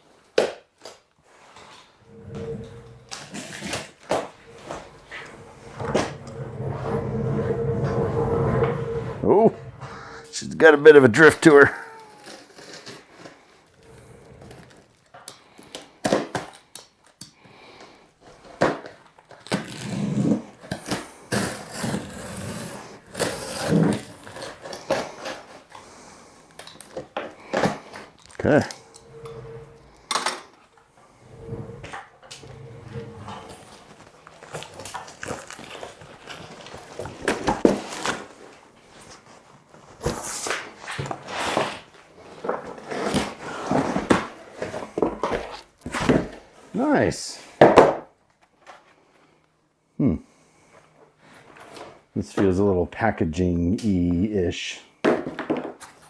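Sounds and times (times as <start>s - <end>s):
rustling and crackling wrapping: 20.6s - 47.0s
packaging ripping: 34.3s - 38.4s.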